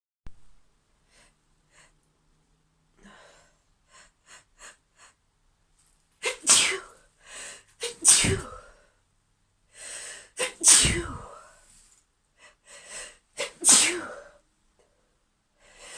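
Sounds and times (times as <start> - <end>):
woman sneezing: 6.2 - 6.9, 7.8 - 8.6, 10.4 - 11.3, 13.4 - 14.2
woman sniffling: 6.2 - 8.8, 9.8 - 11.6.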